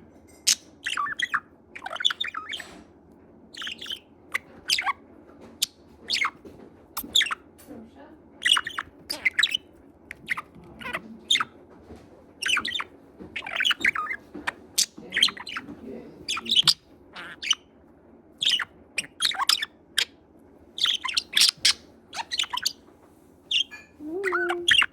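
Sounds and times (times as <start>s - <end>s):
budgerigar chattering: 0.5s - 2.7s, 3.5s - 5.0s, 5.6s - 6.4s, 7.0s - 7.4s, 8.4s - 11.5s, 12.4s - 14.2s, 14.8s - 15.6s, 16.2s - 17.7s, 18.4s - 20.1s, 20.8s - 22.8s, 23.5s - 24.9s.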